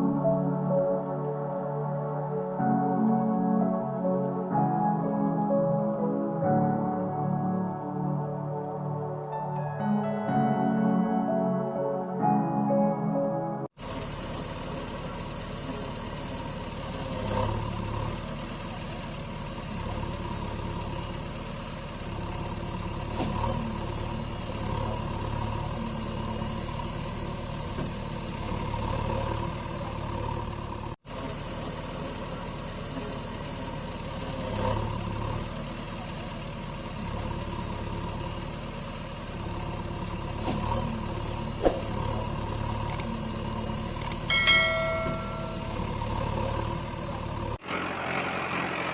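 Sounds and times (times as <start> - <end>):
truck engine idling: 13.7 - 48.9.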